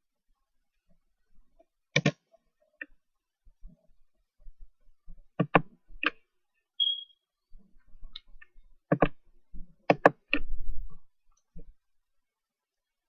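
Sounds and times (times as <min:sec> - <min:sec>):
computer mouse clicks: 0:01.9 - 0:02.2, 0:05.4 - 0:06.2, 0:08.1 - 0:09.2, 0:09.8 - 0:10.5
short beep: 0:06.8 - 0:07.2.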